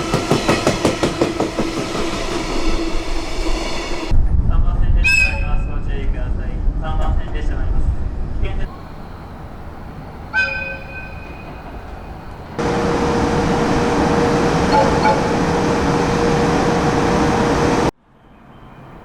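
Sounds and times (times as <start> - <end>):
train rolling past: 0.0 - 19.0
locomotive horn blast: 10.3 - 11.6, 12.6 - 17.9.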